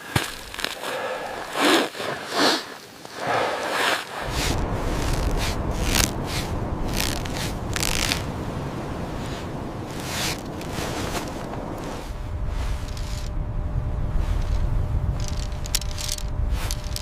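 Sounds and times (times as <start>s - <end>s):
scraping rustling swishes: 0.8s - 13.4s
low wind rumble on microphone: 4.2s - 17.0s.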